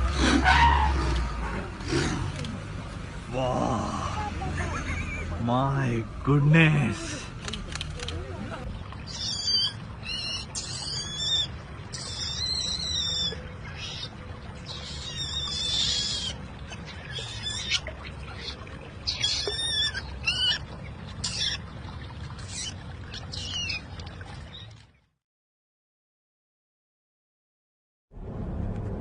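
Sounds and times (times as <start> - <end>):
bird giving high-pitched calls: 9.1 - 20.6.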